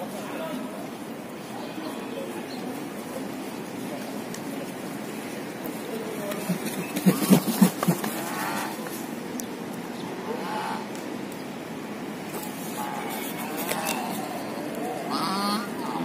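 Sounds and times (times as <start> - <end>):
higher bird calls: 6.3 - 9.0, 12.4 - 16.0
waterfowl honking: 15.0 - 16.0.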